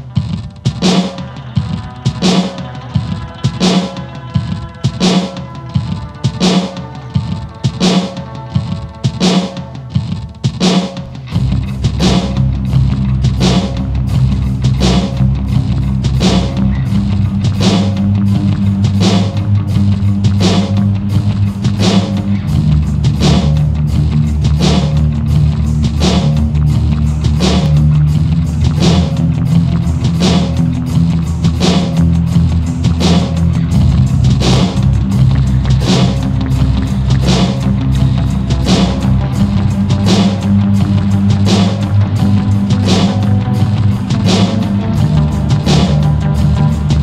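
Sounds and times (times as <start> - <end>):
steady drum beat: 0.0 - 47.0
low bass line: 11.0 - 47.0.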